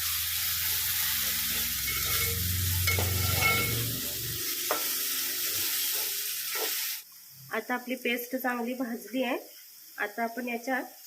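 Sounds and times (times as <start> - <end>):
paste and onion sizzling in oil: 0.0 - 7.4
spoon tapping a pot: 1.8 - 4.0.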